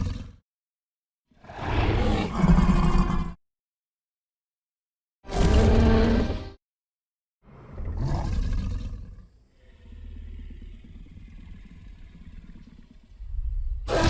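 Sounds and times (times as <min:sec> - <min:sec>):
dinosaur roar: 0:01.4 - 0:03.4, 0:07.8 - 0:14.0
low rumbling growl: 0:08.9 - 0:14.0.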